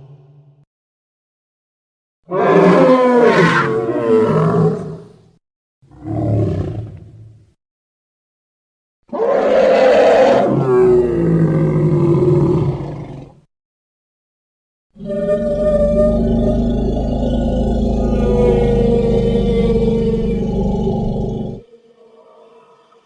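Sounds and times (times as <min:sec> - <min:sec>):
dinosaur roar: 0:02.3 - 0:05.0, 0:09.1 - 0:13.4, 0:15.0 - 0:22.5.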